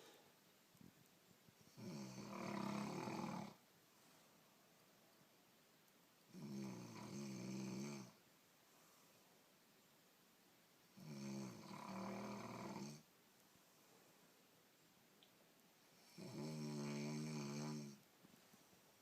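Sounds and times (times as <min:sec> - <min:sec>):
woman snoring: 0:01.7 - 0:03.6, 0:06.3 - 0:08.2, 0:11.0 - 0:13.0, 0:16.0 - 0:18.0.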